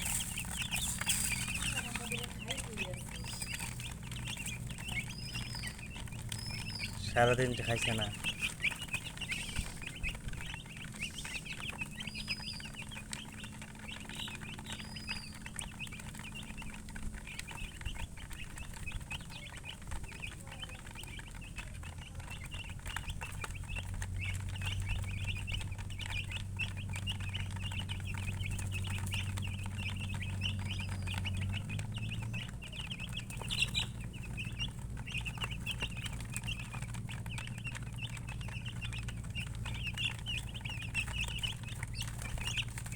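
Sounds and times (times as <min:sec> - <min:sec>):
chicks peeping: 0:00.0 - 0:42.9.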